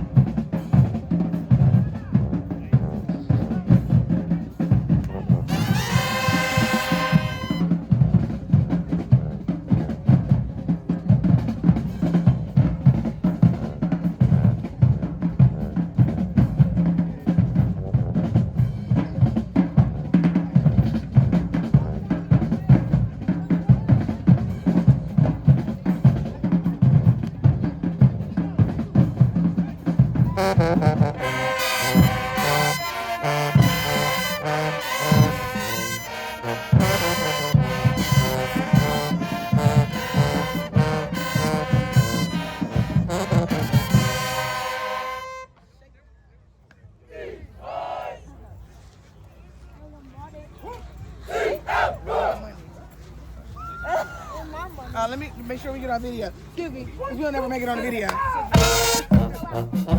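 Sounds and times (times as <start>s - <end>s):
snare and bass drum cadence: 0.0s - 45.5s, 58.1s - 59.9s
brass chord: 5.4s - 7.8s, 30.4s - 45.6s, 58.6s - 59.9s.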